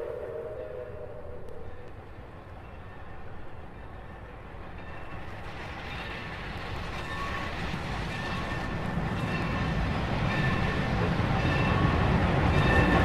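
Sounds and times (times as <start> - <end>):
steam locomotive rumble: 0.0 - 13.0
locomotive bell ringing: 7.0 - 13.0.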